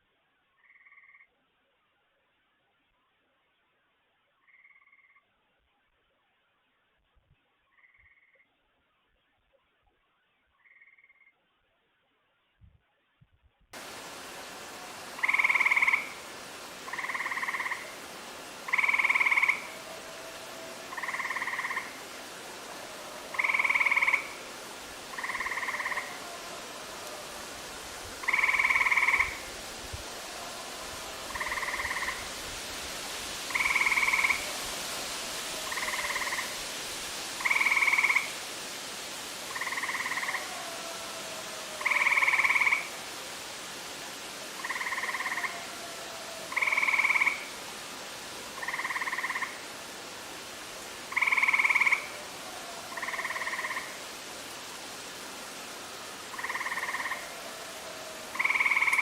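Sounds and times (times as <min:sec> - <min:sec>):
frogs trilling: 0:14.5 - 0:29.5, 0:30.4 - 0:32.2, 0:33.5 - 0:34.6, 0:35.6 - 0:36.6, 0:37.4 - 0:38.3, 0:39.4 - 0:41.0, 0:41.7 - 0:43.0, 0:44.6 - 0:47.5, 0:48.6 - 0:49.7, 0:51.1 - 0:54.0, 0:56.3 - 0:59.0.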